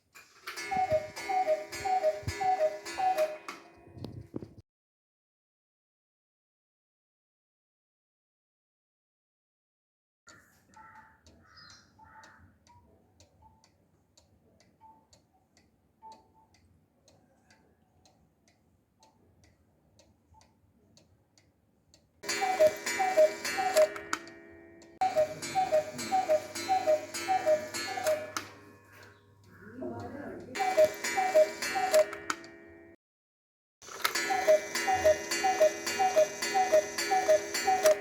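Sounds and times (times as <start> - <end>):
cuckoo clock ticking: 0.2 - 4.1, 10.3 - 21.1, 22.2 - 33.0, 33.8 - 38.0
two-note cuckoo calls: 0.6 - 3.8, 22.2 - 24.4, 25.0 - 29.6, 30.6 - 32.5, 34.1 - 38.0.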